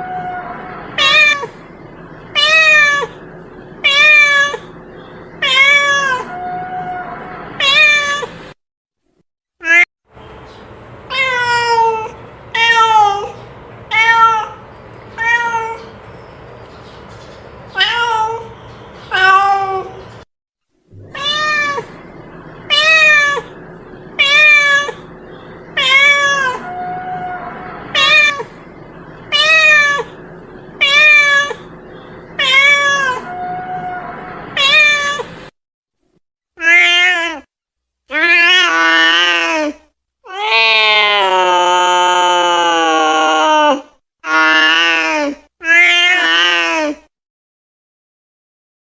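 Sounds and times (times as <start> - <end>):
cat meowing: 0.0 - 1.6, 2.4 - 3.2, 3.8 - 4.7, 5.4 - 8.4, 11.1 - 14.6, 15.2 - 15.9, 17.8 - 18.5, 19.1 - 20.0, 21.0 - 22.0, 22.7 - 23.6, 24.2 - 25.1, 25.8 - 28.6, 29.3 - 30.2, 30.8 - 31.7, 32.4 - 35.3, 36.6 - 37.5, 45.6 - 47.0.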